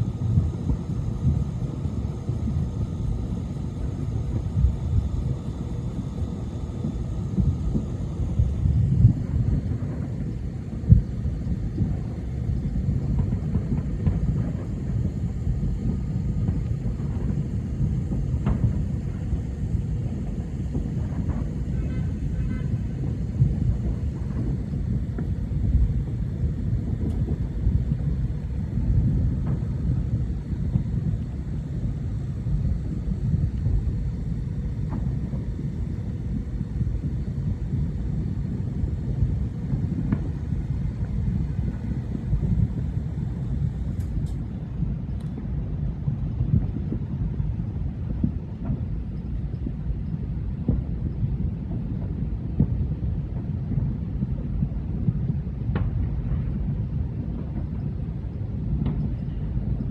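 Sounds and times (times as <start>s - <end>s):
distant fireworks rumble: 0.0s - 59.9s
faint pops and crackles: 0.0s - 59.9s.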